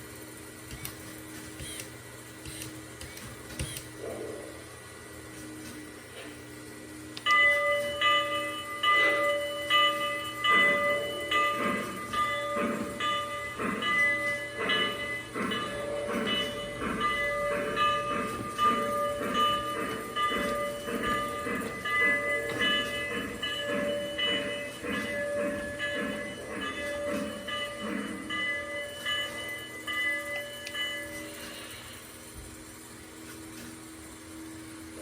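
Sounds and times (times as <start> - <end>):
bell ringing: 7.3 - 31.8
steam locomotive chuffing: 8.2 - 35.0.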